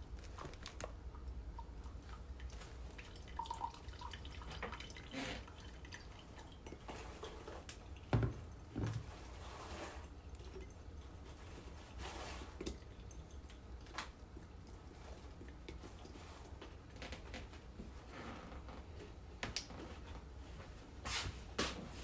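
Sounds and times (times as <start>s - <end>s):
liquid dripping: 0.0s - 9.4s.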